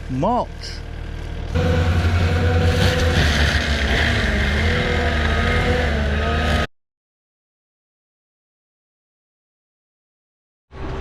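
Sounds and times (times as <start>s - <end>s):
diesel engine running hard: 0.0s - 6.7s.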